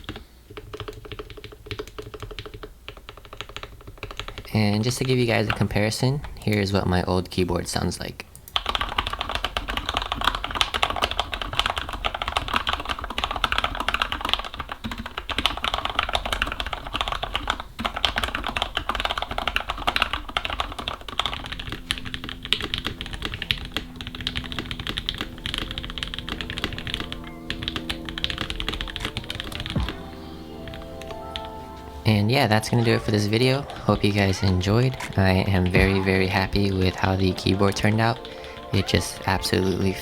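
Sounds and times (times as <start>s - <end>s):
fast typing on keyboard: 0.0s - 5.8s, 8.4s - 40.0s
background music with held tones: 21.2s - 40.0s.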